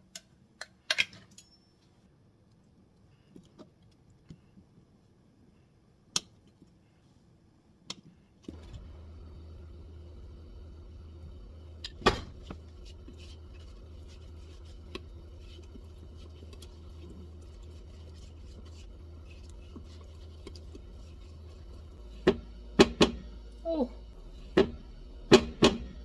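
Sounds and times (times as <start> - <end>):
steady low hum: 8.4 - 26.0.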